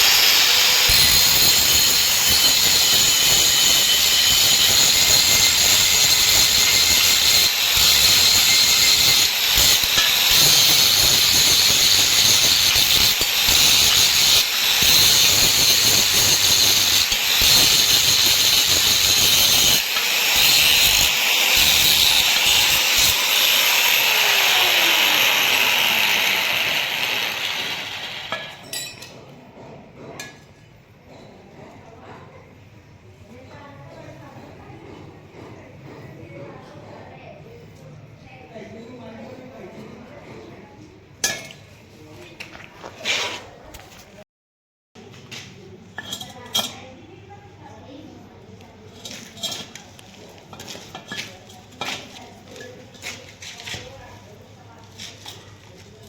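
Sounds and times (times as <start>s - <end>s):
welding arc hiss and crackle: 0.0s - 28.6s.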